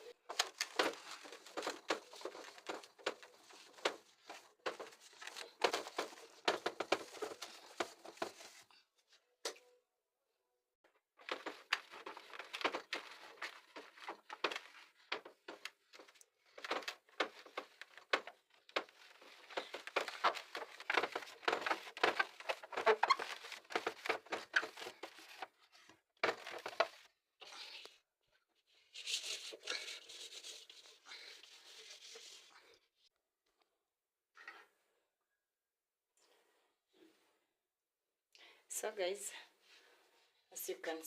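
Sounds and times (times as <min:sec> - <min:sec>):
clicks knocks and scrapes: 0:11.2 - 0:25.5.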